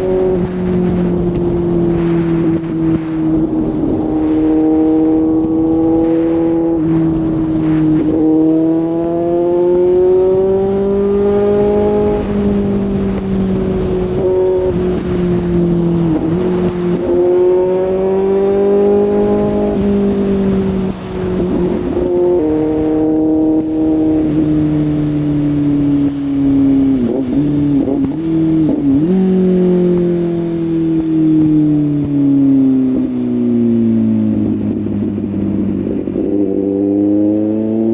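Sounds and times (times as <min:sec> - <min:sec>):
motorcycle engine running: 0:00.0 - 0:37.9.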